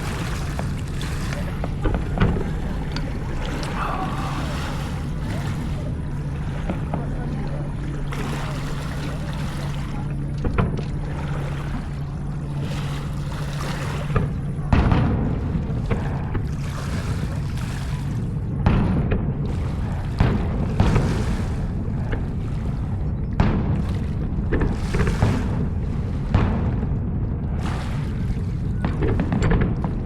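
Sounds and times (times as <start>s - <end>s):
dull thumps: 0.0s - 8.2s
low motor hum: 0.0s - 30.0s
wash of noise: 0.0s - 30.0s.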